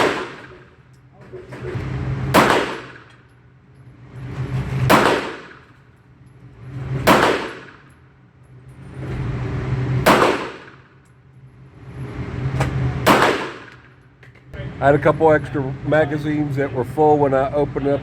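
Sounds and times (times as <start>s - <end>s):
pistol shots: 0.0s - 0.8s, 2.3s - 3.2s, 4.9s - 5.8s, 7.0s - 8.0s, 10.0s - 11.0s, 12.6s - 14.0s.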